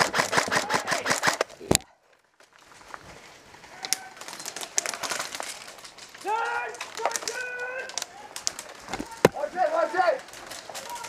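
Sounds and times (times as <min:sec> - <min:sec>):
airsoft gun firing full-auto: 0:00.0 - 0:01.5
scattered clicks: 0:00.0 - 0:01.6, 0:03.8 - 0:11.0
faint outdoor background noise: 0:00.0 - 0:11.0.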